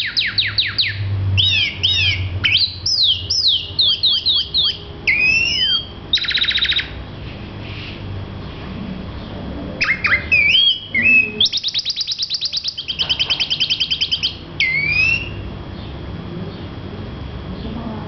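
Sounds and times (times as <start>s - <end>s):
bird singing whistles and trill: 0.0s - 7.0s, 9.8s - 15.5s.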